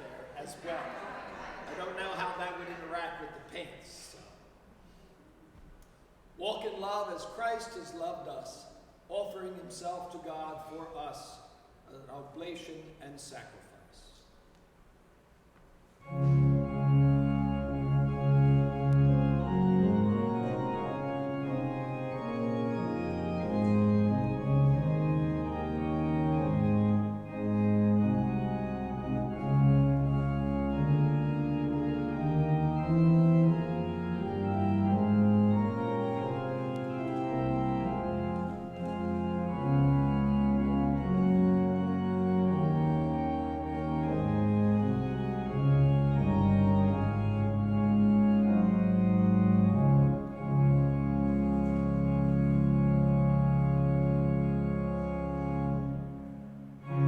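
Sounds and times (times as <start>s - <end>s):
church organ playing chords: 0.0s - 4.2s, 16.0s - 57.0s.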